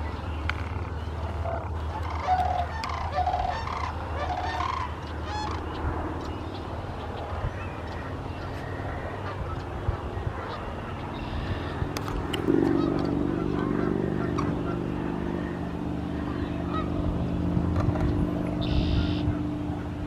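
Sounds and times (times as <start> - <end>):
steady low rumble: 0.0 - 20.0
cranes bugling calls: 0.5 - 20.0.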